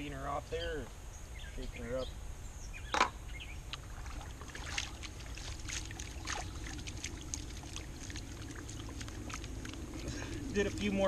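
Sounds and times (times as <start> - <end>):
water and gravel sloshing in a pan: 3.8 - 11.0.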